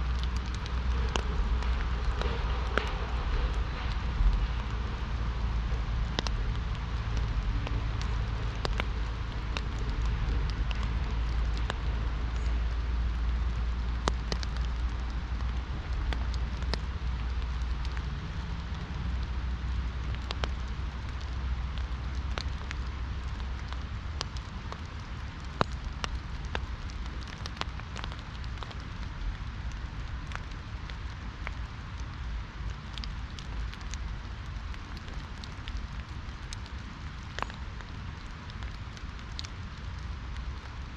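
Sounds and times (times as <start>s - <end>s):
deep low rumble: 0.0s - 24.3s
rain hiss: 0.0s - 40.9s
raindrops ticking on umbrella: 0.0s - 40.9s.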